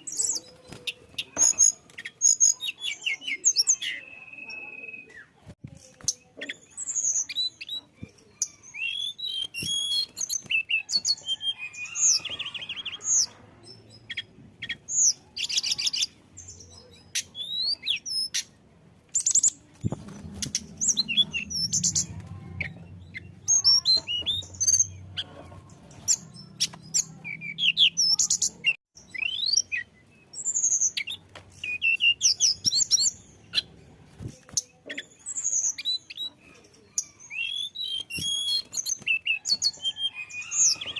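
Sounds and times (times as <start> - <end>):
songbird singing: 0.0 - 40.9
low hum: 19.9 - 25.9.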